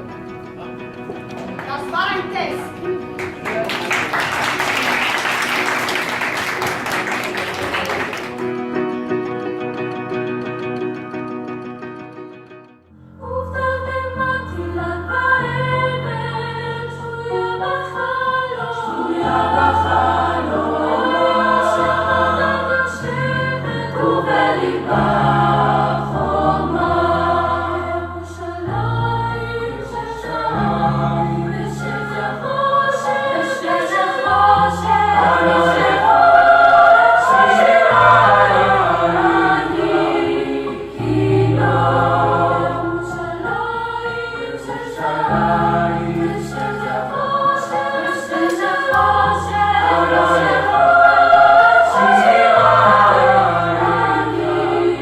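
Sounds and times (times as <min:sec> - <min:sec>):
youth choir singing in harmony: 0:01.8 - 0:08.6, 0:13.2 - 0:55.0.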